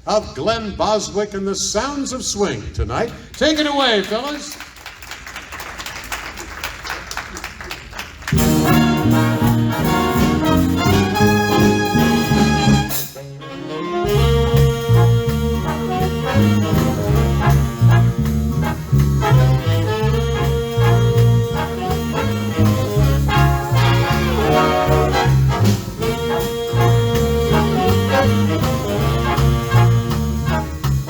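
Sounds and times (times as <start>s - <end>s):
big band playing swing: 7.9s - 31.0s.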